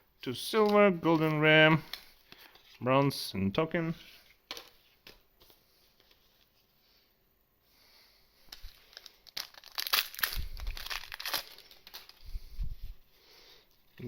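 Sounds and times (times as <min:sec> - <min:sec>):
foil wrapper crinkling and tearing: 0:08.5 - 0:12.3.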